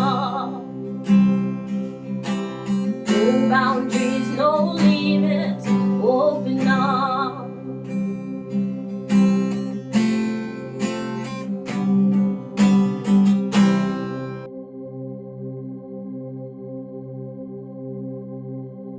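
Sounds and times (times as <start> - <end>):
acoustic guitar strumming chords: 0.0 - 14.5.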